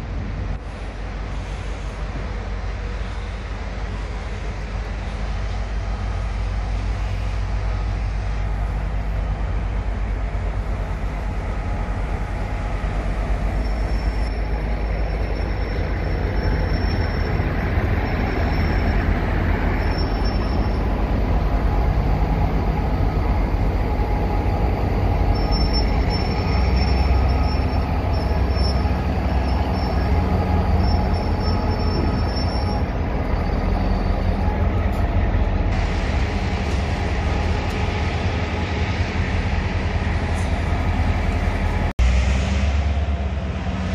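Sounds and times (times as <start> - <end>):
locomotive engine rumbling: 0.0 - 43.9
thin high squeal: 19.7 - 20.9, 25.3 - 34.4.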